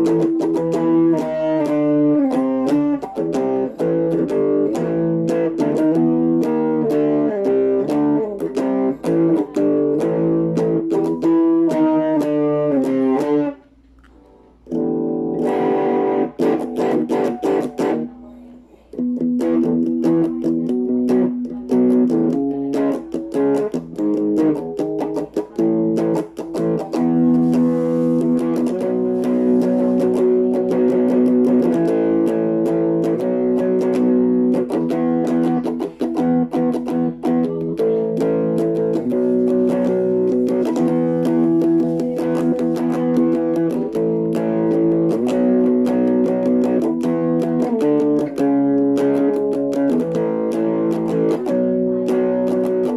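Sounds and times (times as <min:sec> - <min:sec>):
electric guitar strumming chords: 0:00.0 - 0:52.9.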